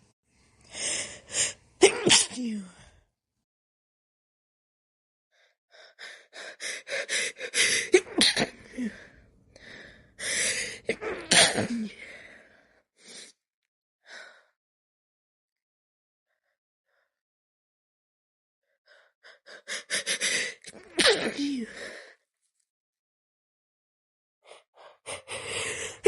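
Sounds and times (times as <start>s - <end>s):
woman stifled wet sneezes: 1.8s - 2.4s.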